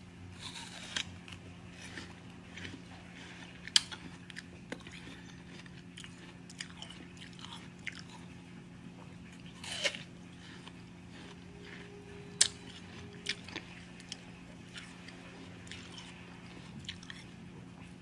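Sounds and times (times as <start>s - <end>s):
crunching watermelon: 0.3s - 18.0s
wet chewing clicks: 0.6s - 8.4s.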